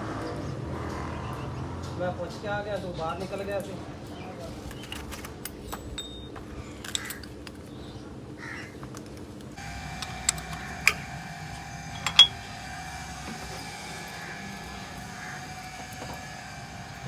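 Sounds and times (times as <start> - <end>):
steady hum: 9.5 - 17.0
metallic clinks and taps: 11.9 - 12.4.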